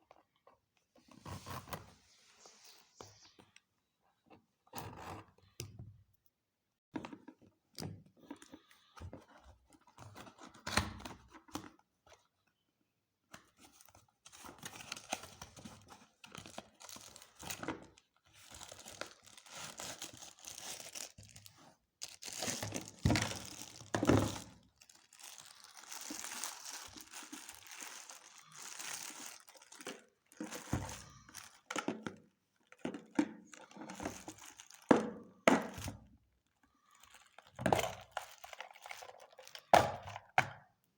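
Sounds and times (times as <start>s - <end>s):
packaging torn and crinkled: 14.7s - 31.7s, 33.6s - 34.9s.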